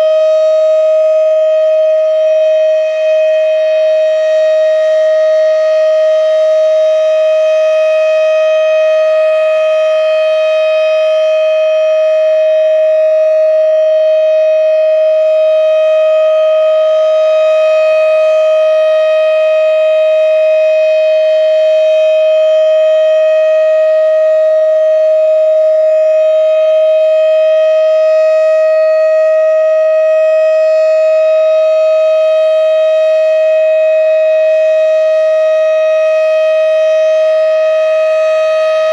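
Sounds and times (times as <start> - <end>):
tornado siren steady tone: 0.0 - 38.9.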